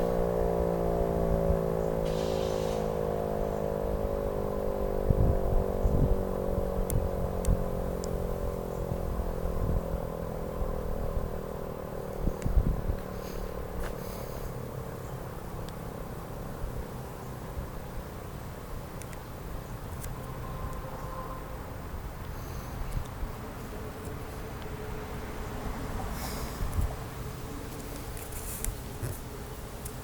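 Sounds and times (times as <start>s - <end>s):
warning siren winding down: 0.0s - 13.8s, 20.2s - 22.4s.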